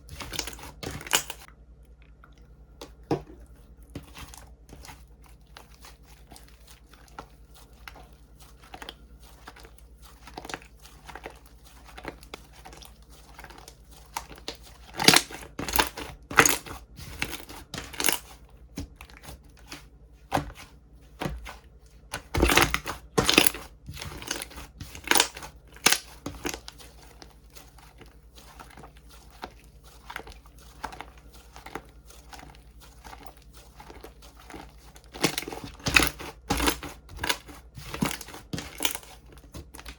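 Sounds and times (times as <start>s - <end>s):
slime crackling and popping: 22.2s - 27.2s.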